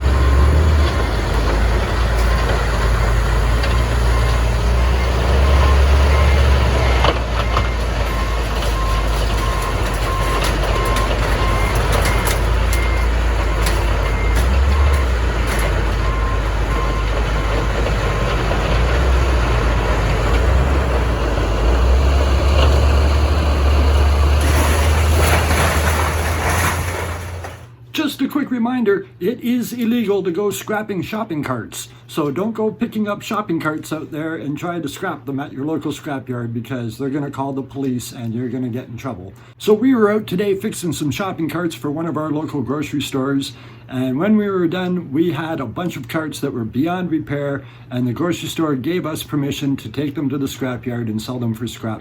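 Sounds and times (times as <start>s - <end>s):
reversing alarm beeping: 0.0s - 24.8s
heavy vehicle engine rumbling: 0.0s - 27.8s.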